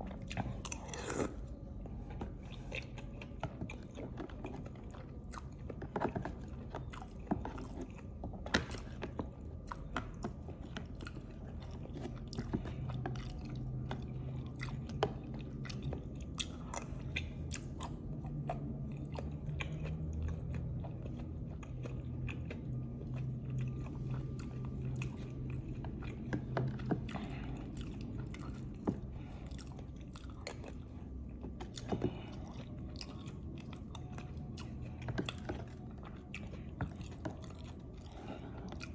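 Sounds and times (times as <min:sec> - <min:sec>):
close chewing and biting: 0:00.0 - 0:38.9.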